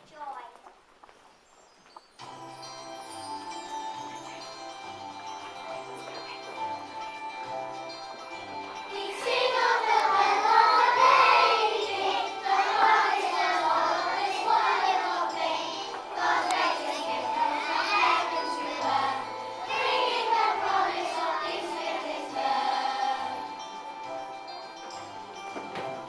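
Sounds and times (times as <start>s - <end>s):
instrumental accompaniment: 2.2s - 26.0s
children's choir singing: 8.6s - 26.0s.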